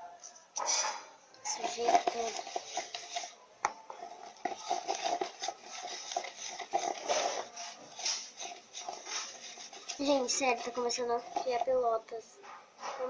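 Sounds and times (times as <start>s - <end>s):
slime stirred in a pot: 1.4s - 12.2s.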